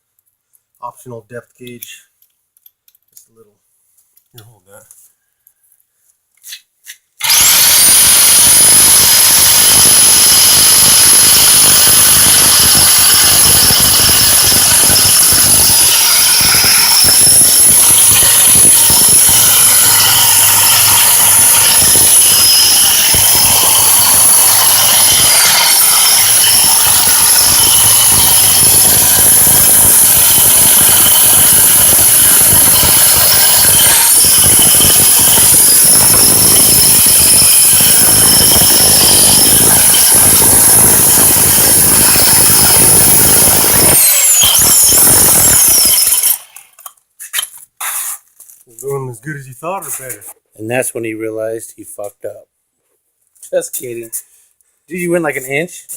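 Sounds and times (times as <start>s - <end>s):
rotary hammer drilling concrete: 7.2s - 48.0s.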